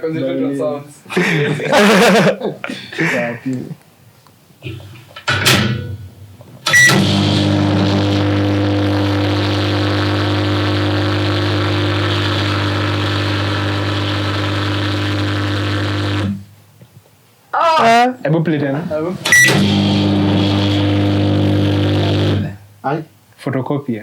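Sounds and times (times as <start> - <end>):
microwave oven humming: 6.7 - 16.5, 19.3 - 22.6.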